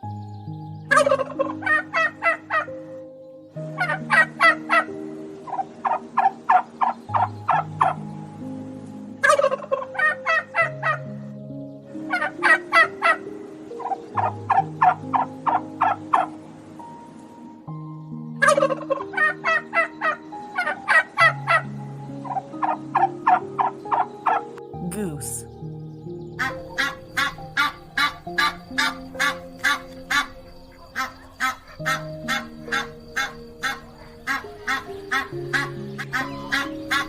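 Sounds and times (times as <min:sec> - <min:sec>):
turkey gobbling: 0:05.5 - 0:08.0, 0:09.2 - 0:11.0, 0:26.4 - 0:37.0.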